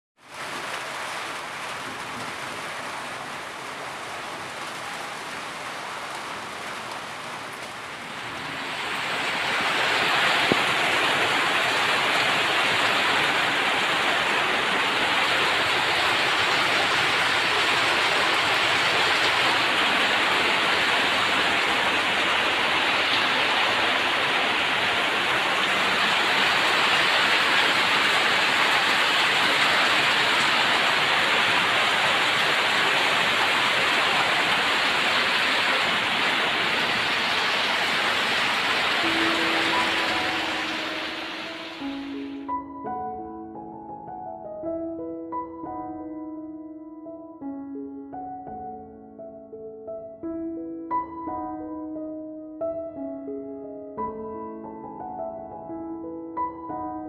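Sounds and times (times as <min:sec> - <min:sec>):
heavy rain falling: 0:00.2 - 0:42.4.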